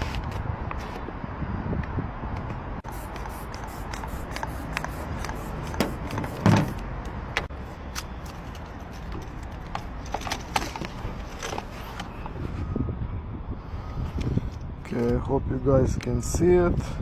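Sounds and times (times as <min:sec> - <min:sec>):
outdoor background noise: 0:00.0 - 0:17.0
tools clicking on car door: 0:05.7 - 0:06.8
loud thump: 0:05.8 - 0:06.8.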